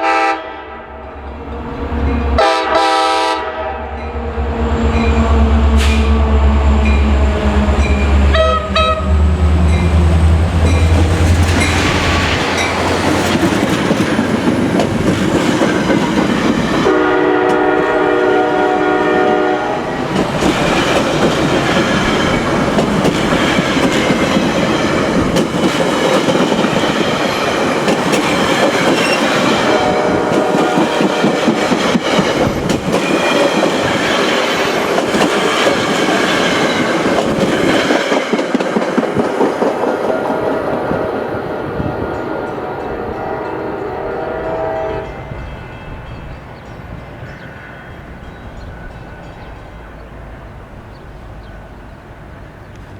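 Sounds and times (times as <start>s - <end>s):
train horn chord: 0.0s - 1.5s, 2.1s - 4.2s, 4.8s - 9.9s, 16.8s - 20.0s, 29.6s - 31.6s, 40.0s - 46.3s
diesel locomotive engine rumble: 0.0s - 52.9s
train wheels clattering over rail joints: 10.6s - 17.8s, 20.0s - 40.3s.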